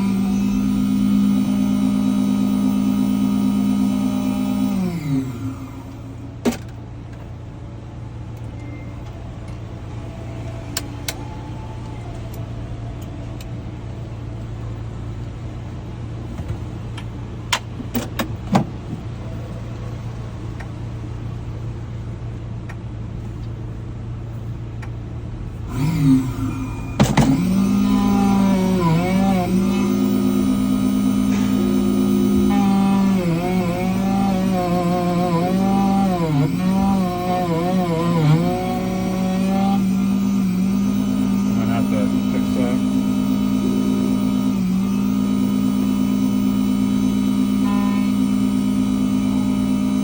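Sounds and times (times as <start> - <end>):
key-cutting machine hum: 0.0 - 6.4, 25.7 - 50.0
key-cutting motor whine: 0.0 - 6.4, 25.7 - 50.0.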